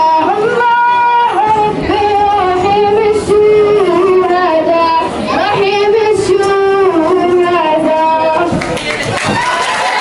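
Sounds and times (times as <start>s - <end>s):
young voices singing: 0.0s - 10.0s.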